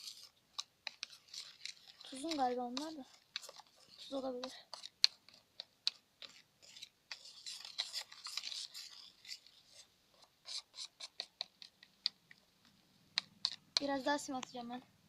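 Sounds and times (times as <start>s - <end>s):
rustling scrape in container: 0.0s - 5.4s, 6.2s - 11.7s.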